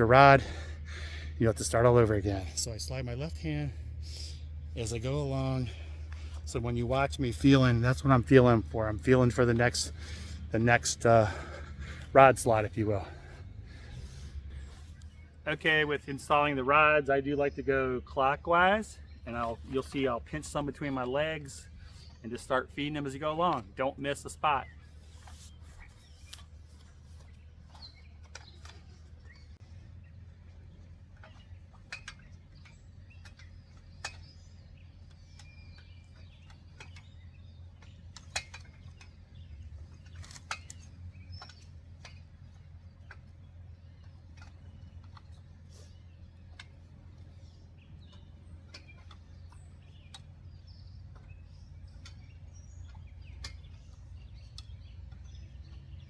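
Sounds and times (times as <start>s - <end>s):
birds chirping: 0.0s - 56.0s
low steady rumble: 0.0s - 56.0s.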